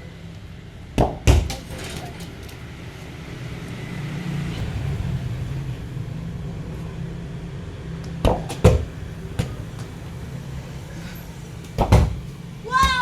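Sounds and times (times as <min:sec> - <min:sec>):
low engine hum: 0:00.0 - 0:13.0
sharp thumps: 0:04.5 - 0:10.0, 0:11.6 - 0:13.0.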